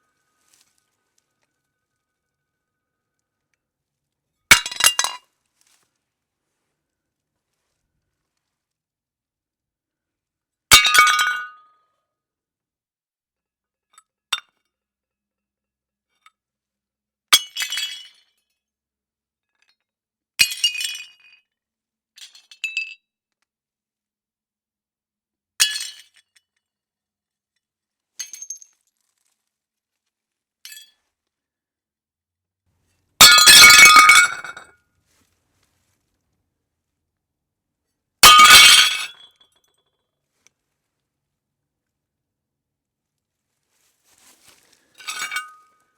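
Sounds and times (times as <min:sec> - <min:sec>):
ceramic plates smashing: 0:04.5 - 0:05.2, 0:33.2 - 0:34.7, 0:38.2 - 0:39.3
shards clinking: 0:33.2 - 0:34.7, 0:38.2 - 0:39.4, 0:45.0 - 0:45.8.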